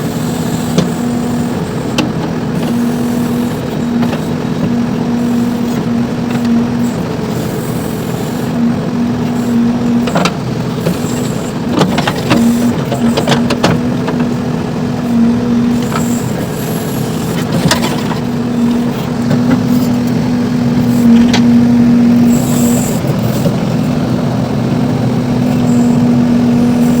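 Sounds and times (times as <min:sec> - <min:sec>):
diesel engine running steadily: 0:00.0 - 0:27.0.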